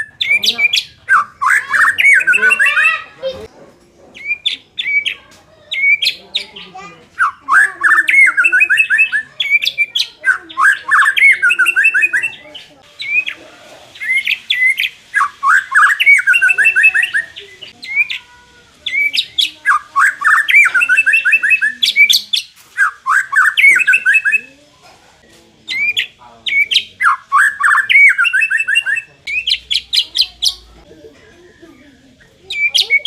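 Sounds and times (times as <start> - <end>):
bird singing whistled notes: 0.0 - 3.0, 7.2 - 13.4, 14.0 - 18.2, 18.9 - 24.4, 25.7 - 30.7.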